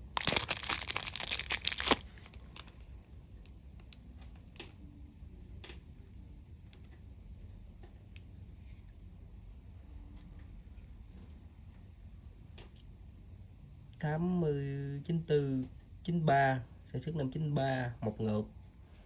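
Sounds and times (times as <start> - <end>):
packaging crinkling and tearing: 0.0 - 2.9.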